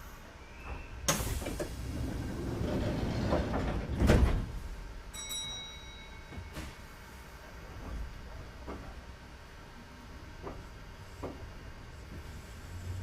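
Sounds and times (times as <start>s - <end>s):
train doors sliding shut: 0.6s - 5.0s, 6.3s - 6.9s.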